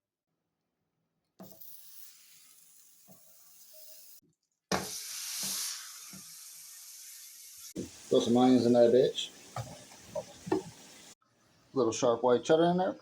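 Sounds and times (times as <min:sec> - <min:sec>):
food sizzling in a pan: 0:01.4 - 0:11.2
utensil knocking on pan: 0:09.6 - 0:10.8.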